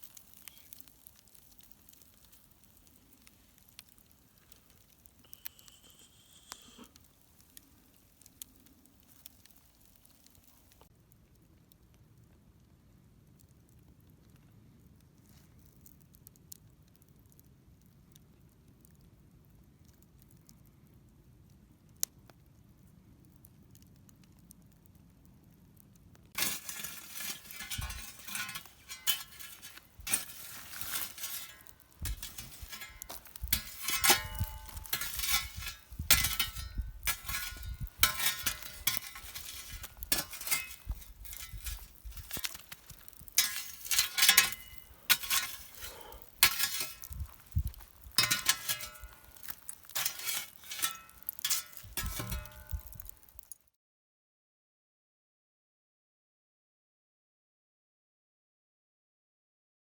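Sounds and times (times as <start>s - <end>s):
metal cookware clinking and clattering: 26.4s - 42.7s, 43.4s - 47.1s, 48.2s - 52.9s.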